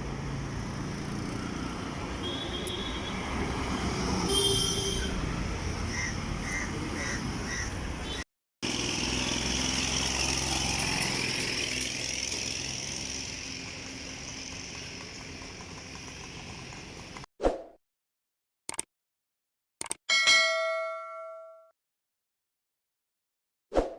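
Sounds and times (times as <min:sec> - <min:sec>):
small vehicle engine running: 0:00.0 - 0:04.3, 0:08.6 - 0:17.3.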